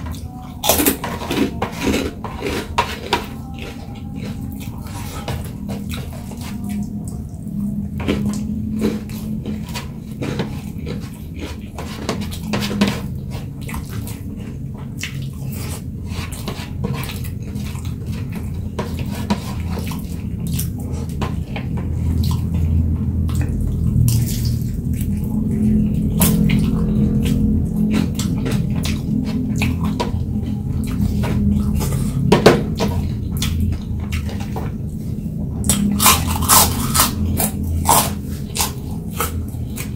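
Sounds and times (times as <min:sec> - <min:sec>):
person chewing crunchy food: 0:00.0 - 0:39.9
steady low hum: 0:00.0 - 0:39.9.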